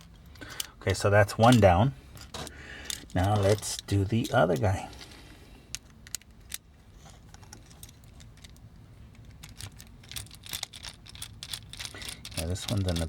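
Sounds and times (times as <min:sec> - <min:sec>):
plastic toy parts clicking: 0:09.2 - 0:13.0.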